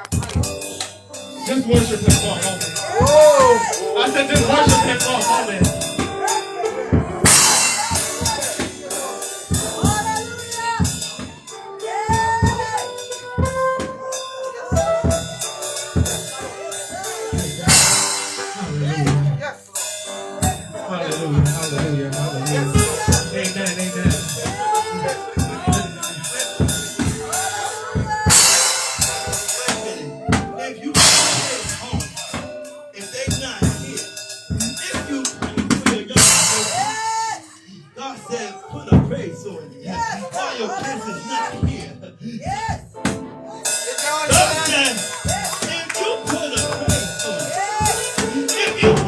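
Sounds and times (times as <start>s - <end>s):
drum kit beating: 0.0s - 37.5s, 38.7s - 39.4s, 40.0s - 49.0s
worship band playing: 0.0s - 49.0s
cymbal crash: 0.4s - 6.6s, 7.2s - 11.6s, 12.5s - 27.7s, 28.3s - 30.0s, 31.0s - 35.0s, 36.2s - 37.4s.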